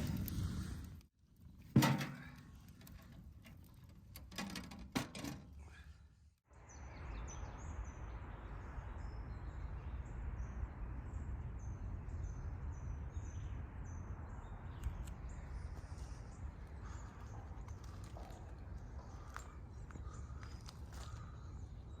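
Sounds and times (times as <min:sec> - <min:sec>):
low outdoor rumble: 0:05.6 - 0:22.0.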